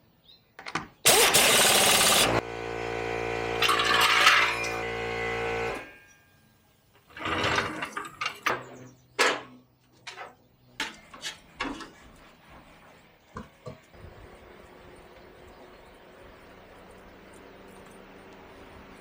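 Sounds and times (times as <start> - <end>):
rattling burst: 1.1 - 2.4
machine hum: 1.1 - 6.1, 13.9 - 19.0
metallic clanks of tools: 3.6 - 4.9.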